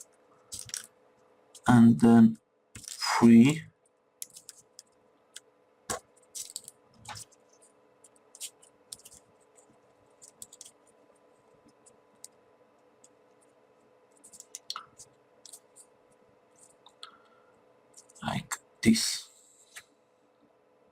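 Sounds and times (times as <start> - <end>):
paper clicks and crinkles: 0.5 - 0.9, 2.8 - 3.0, 4.2 - 4.9, 5.9 - 10.9, 14.2 - 15.8.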